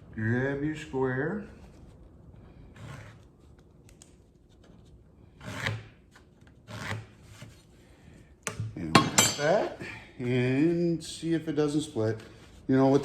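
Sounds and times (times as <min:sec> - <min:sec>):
square scraping on wooden board: 0:06.6 - 0:07.6.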